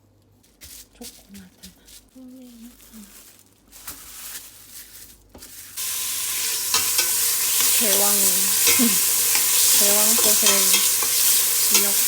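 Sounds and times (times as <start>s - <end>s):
food sizzling in a hot pan: 5.8s - 12.0s.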